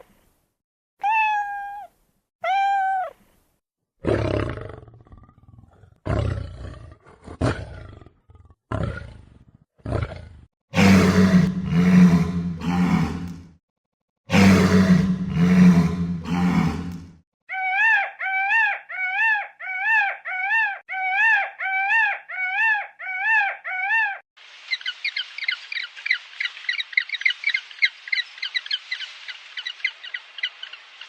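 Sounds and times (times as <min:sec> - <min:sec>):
deep roar-like animal call: 0:09.9 - 0:13.5, 0:14.3 - 0:17.1
high-pitched arched animal calls: 0:17.5 - 0:24.2.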